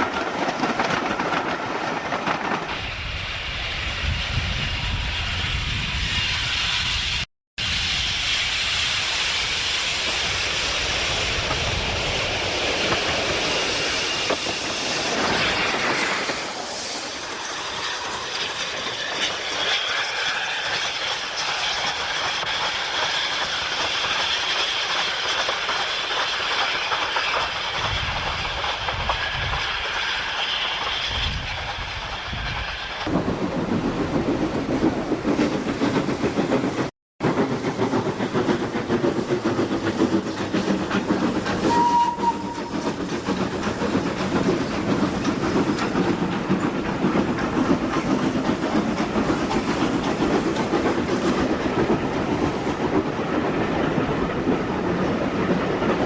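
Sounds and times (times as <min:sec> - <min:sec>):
wheels clattering over rail joints: 0:00.0 - 0:02.8, 0:31.3 - 0:56.0
steam hissing: 0:02.4 - 0:56.0.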